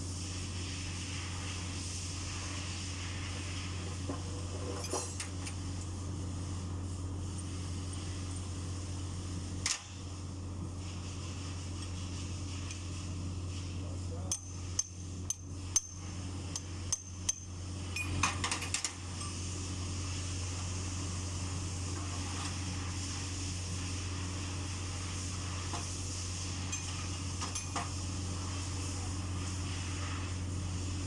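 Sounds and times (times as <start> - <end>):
steady low hum: 0.0 - 31.0
metal tools striking metal: 14.3 - 16.0, 16.6 - 19.4, 26.7 - 27.9.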